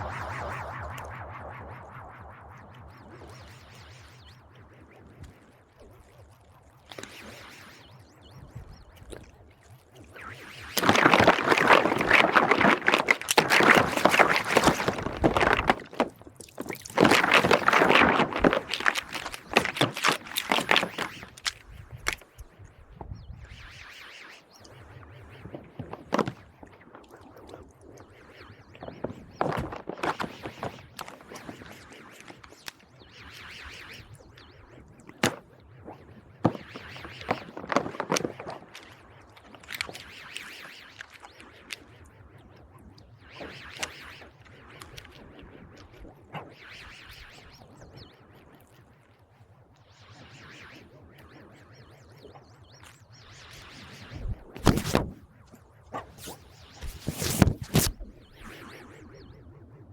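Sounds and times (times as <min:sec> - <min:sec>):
wet bubbly liquid noise: 0:10.8 - 0:21.5.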